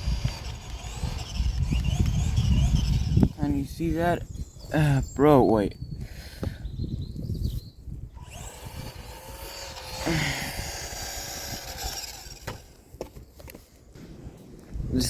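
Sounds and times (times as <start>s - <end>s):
electric motor whining: 0.0s - 4.0s, 8.1s - 12.9s.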